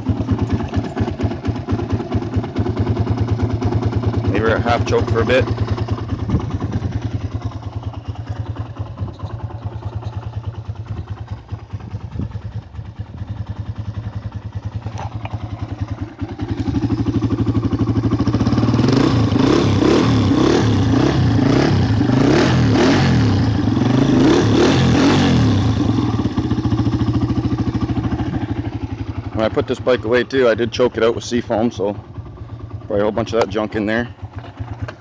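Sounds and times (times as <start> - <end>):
dirt bike engine revving: 16.3 - 29.8.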